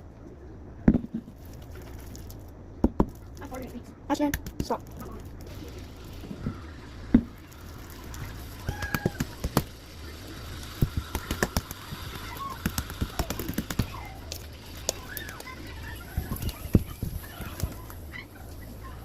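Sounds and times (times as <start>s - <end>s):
faint voices: 4.6s - 19.0s.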